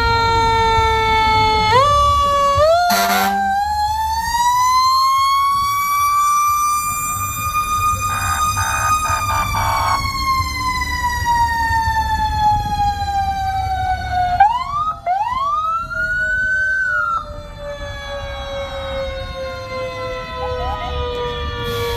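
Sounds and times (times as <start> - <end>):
fire truck siren winding down: 0.0 - 21.9
second siren sweeping up: 0.0 - 21.9
low engine rumble: 1.4 - 16.3.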